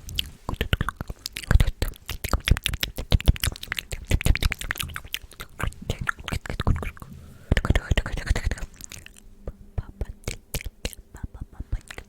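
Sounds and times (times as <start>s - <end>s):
wet mouth clicks and pops: 0.1s - 7.0s, 10.2s - 11.0s, 11.7s - 12.0s.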